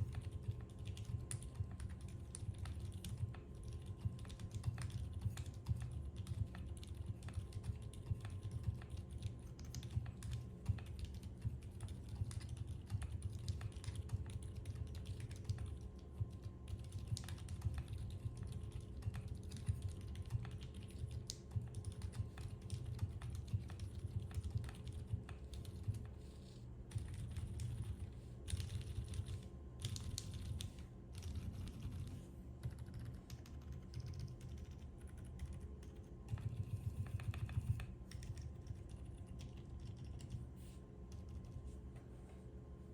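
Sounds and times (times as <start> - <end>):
fast typing on keyboard: 0.0 - 26.2, 26.9 - 40.5.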